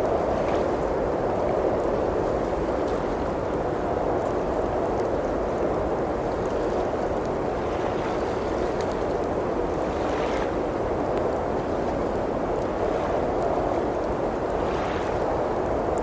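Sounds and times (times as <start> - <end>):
blizzard wind: 0.0 - 16.0
wood fire crackling: 3.2 - 7.7.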